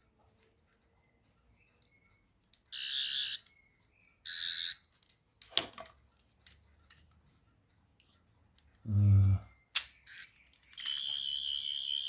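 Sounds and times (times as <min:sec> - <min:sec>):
toy electronic warbling buzz: 0:04.3 - 0:04.8, 0:10.1 - 0:12.0.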